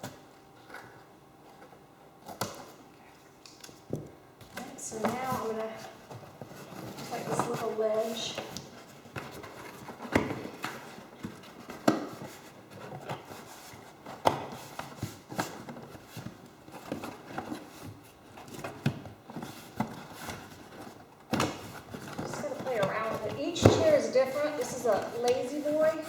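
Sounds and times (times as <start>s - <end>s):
scraping: 21.9s - 26.0s.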